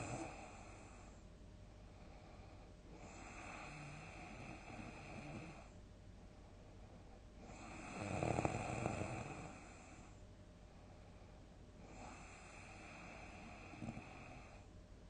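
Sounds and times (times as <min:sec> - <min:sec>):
person snoring: 0:03.0 - 0:05.7, 0:07.5 - 0:10.0.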